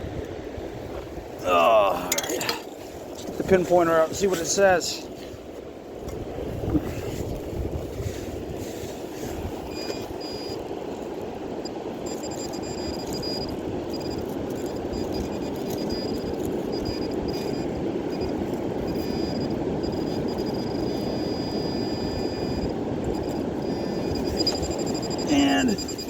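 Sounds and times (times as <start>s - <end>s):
high-pitched electronic tone: 12.1s - 26.0s.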